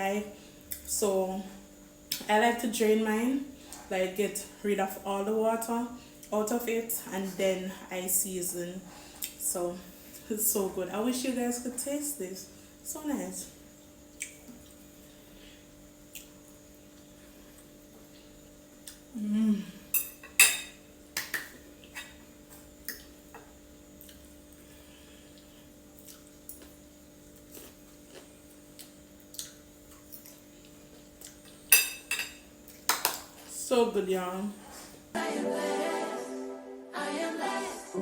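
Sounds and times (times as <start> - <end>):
person humming: 19.1 - 19.9
cutlery clinking on a plate: 20.0 - 22.2, 31.7 - 33.2.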